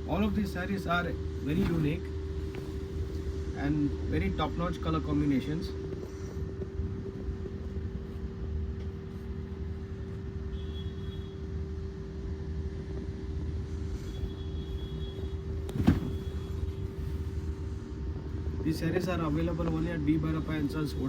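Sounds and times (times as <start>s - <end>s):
low background rumble and hum: 0.0s - 21.0s.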